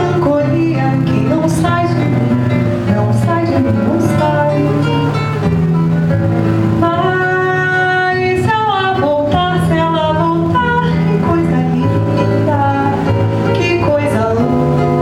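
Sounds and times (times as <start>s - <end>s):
woman singing: 0.0s - 5.6s, 6.7s - 15.0s
acoustic guitar: 0.0s - 15.0s.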